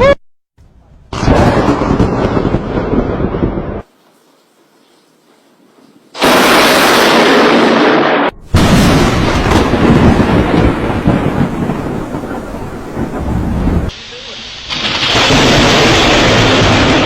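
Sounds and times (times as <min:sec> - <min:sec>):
thunder crash: 0:01.1 - 0:03.9, 0:06.2 - 0:13.9, 0:14.6 - 0:17.0.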